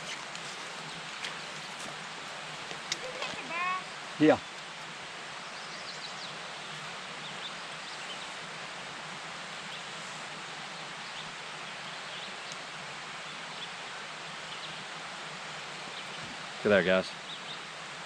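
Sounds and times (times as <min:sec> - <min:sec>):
distant birds chirping: 0:00.0 - 0:08.8
rustling hiss: 0:00.0 - 0:18.0.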